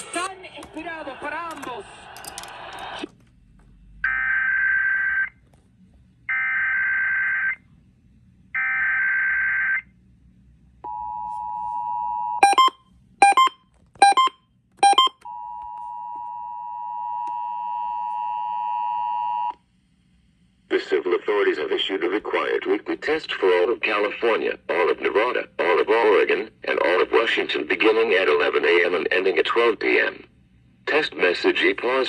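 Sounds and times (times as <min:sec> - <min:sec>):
short sharp beeps: 0:12.4 - 0:15.2.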